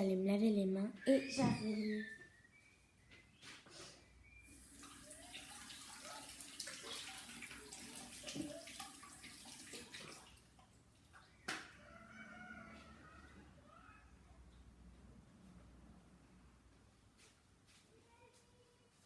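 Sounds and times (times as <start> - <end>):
tap water running: 4.5 - 11.2.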